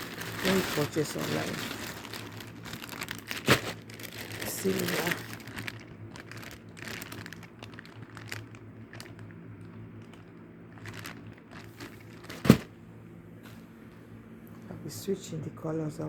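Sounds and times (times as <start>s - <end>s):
plastic packaging crinkling: 0.0s - 12.8s.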